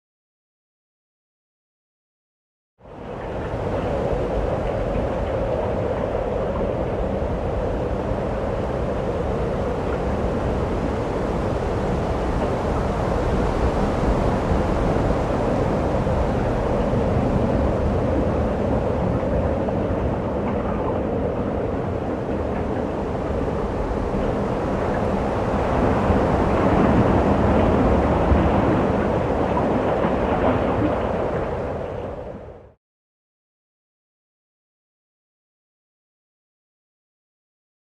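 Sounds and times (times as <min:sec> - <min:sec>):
wind blowing through cave: 0:02.9 - 0:32.8.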